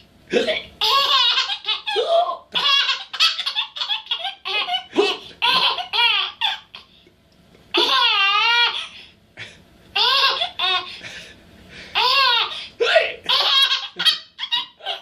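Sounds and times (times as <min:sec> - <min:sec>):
small child giggling: 0:00.8 - 0:06.9, 0:07.7 - 0:09.0, 0:13.3 - 0:15.0.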